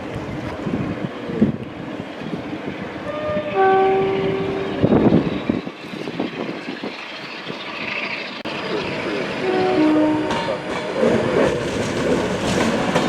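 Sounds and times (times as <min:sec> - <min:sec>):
train rumbling on rails: 0:00.0 - 0:13.0
two-tone train horn: 0:03.0 - 0:05.1, 0:09.4 - 0:10.6.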